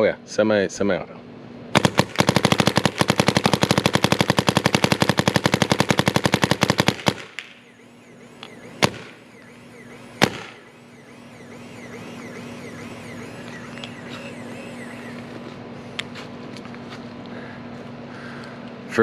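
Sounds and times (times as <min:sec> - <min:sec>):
paintball marker shots: 0:01.8 - 0:07.6, 0:08.4 - 0:09.2, 0:10.2 - 0:10.7.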